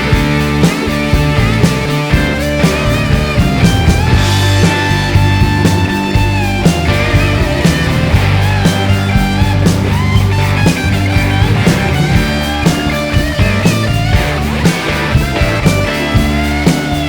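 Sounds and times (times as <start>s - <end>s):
bass and drums beat: 0.0s - 17.0s
electric guitar lead: 0.0s - 17.0s.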